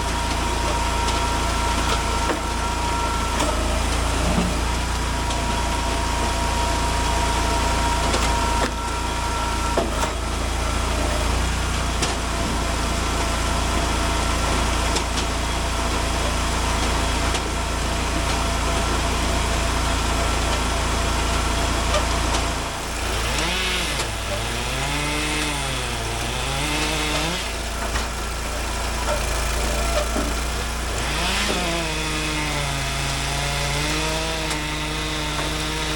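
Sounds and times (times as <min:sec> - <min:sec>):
hydraulic whine: 0:00.0 - 0:35.9
log splitter engine running: 0:00.0 - 0:35.9
chainsaw revving: 0:20.8 - 0:35.9.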